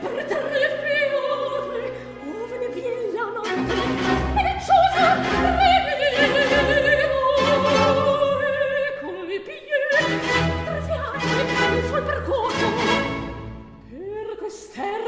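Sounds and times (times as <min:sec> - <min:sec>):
operatic soprano singing: 0:00.0 - 0:15.0
string orchestra: 0:00.0 - 0:15.0.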